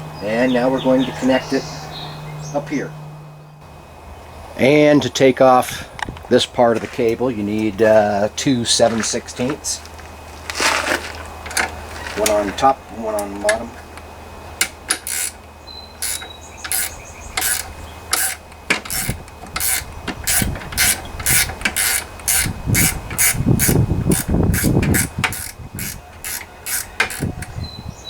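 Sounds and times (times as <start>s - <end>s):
grinding rubbing: 6.8s - 13.4s, 14.6s - 15.4s, 16.0s - 27.6s
ratcheting wrench clicking: 14.6s - 15.4s, 16.0s - 27.6s.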